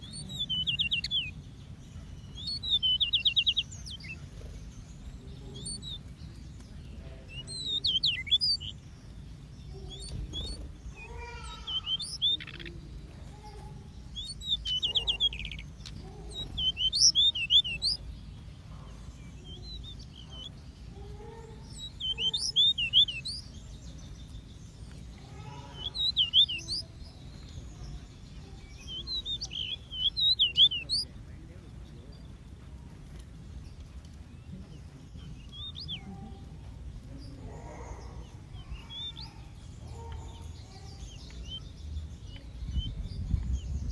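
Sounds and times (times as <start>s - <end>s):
low background rumble: 0.0s - 43.9s
small birds chirping: 0.0s - 43.9s.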